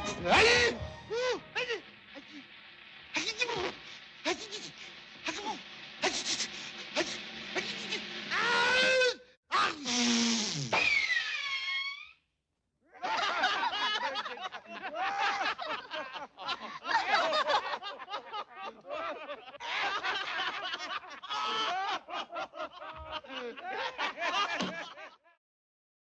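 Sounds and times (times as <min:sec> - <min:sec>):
falling vocal cry: 0:03.1 - 0:09.8.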